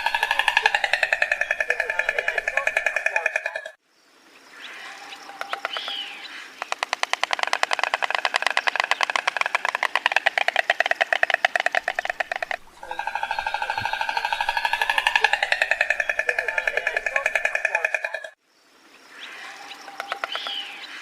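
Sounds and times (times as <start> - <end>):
stork clattering bill: 0.0 - 3.8, 5.4 - 18.4.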